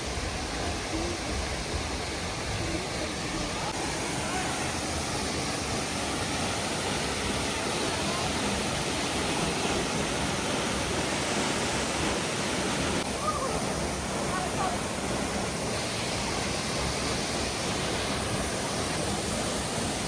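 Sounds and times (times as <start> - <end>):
faint voices: 0.0 - 10.1, 13.0 - 16.4
waterfall rushing: 0.0 - 20.0.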